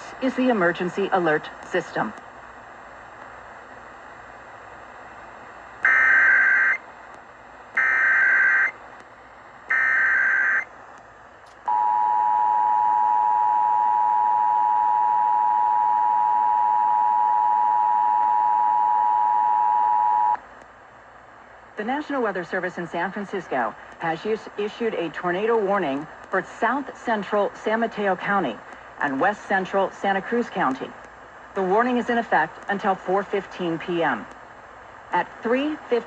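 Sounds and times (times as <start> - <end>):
faint broadcast hiss: 0.0 - 12.5, 19.1 - 36.0.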